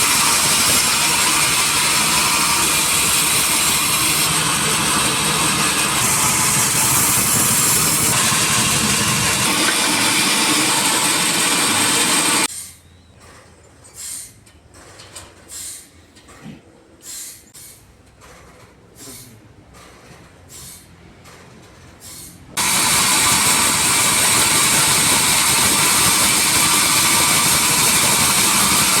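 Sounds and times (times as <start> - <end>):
sawmill machinery: 0.0 - 12.5, 22.0 - 29.0
short hissing puffs: 14.0 - 14.4, 15.5 - 16.0, 17.0 - 17.9, 19.0 - 19.4, 20.5 - 20.9.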